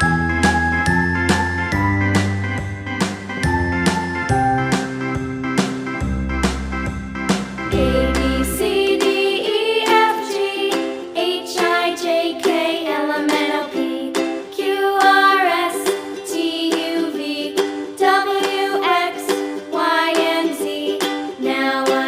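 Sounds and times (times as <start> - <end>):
strummed ukulele chords: 0.0 - 22.0
person singing: 7.7 - 22.0.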